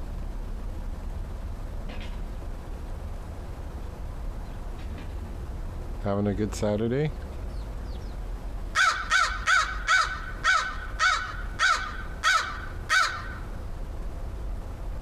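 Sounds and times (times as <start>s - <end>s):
crow cawing: 8.7s - 13.5s.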